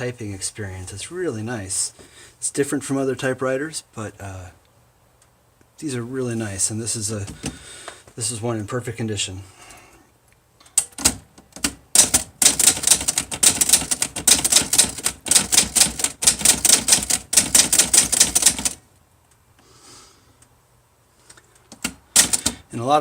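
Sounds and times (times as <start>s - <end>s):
manual typewriter keystrokes: 10.7s - 18.8s, 21.6s - 22.6s.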